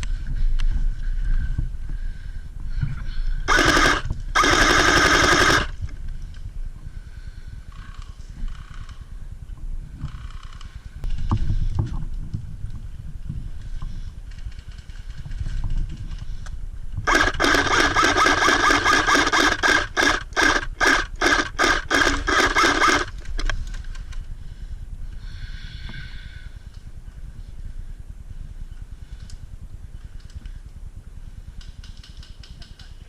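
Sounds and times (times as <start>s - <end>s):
airsoft gun firing bursts: 3.5s - 5.8s, 17.1s - 23.3s
gearbox whining: 3.5s - 5.8s, 17.1s - 23.5s.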